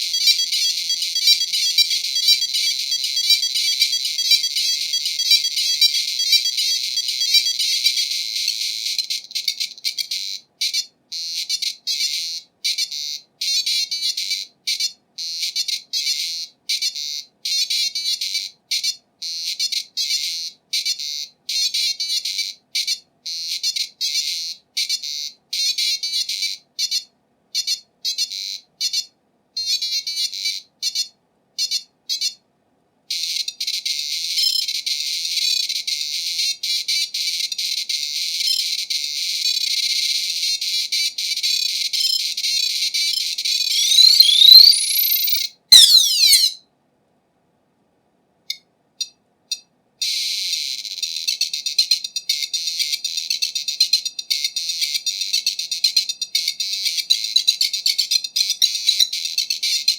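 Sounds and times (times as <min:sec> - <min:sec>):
computer speaker beeper music: 0:43.7 - 0:46.6.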